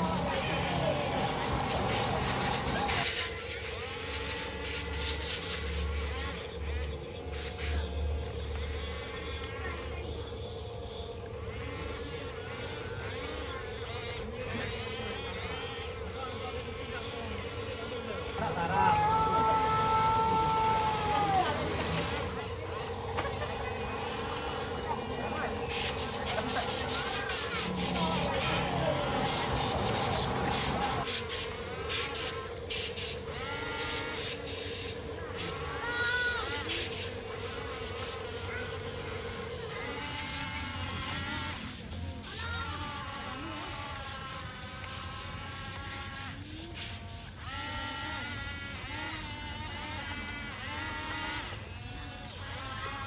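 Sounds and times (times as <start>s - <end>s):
high pulsing buzz: 0.0s - 42.3s
electric motors humming and whining: 0.0s - 53.0s.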